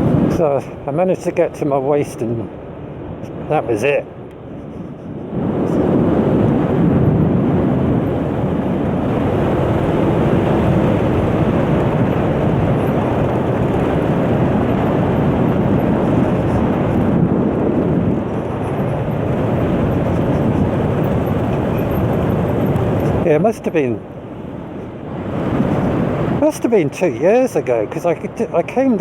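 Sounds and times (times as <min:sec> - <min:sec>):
wind rushing over microphone: 0:00.0 - 0:29.0
scooter engine: 0:18.3 - 0:23.2.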